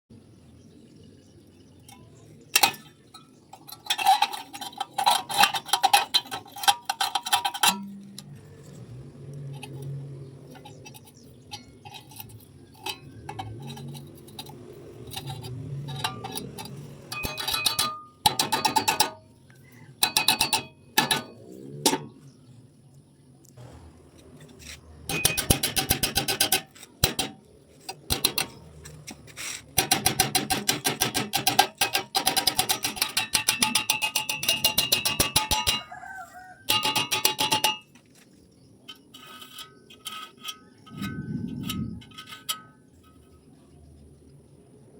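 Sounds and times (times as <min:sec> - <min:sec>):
low steady hum: 0:37.8 - 0:44.9.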